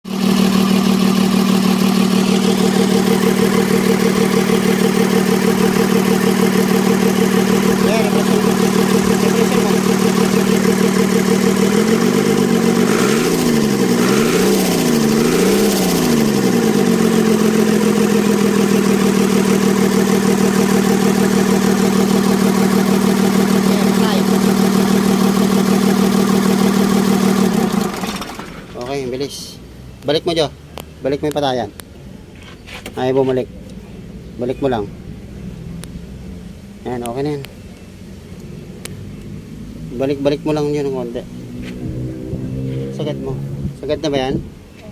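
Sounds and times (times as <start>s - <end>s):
diesel engine running: 0.1s - 29.6s.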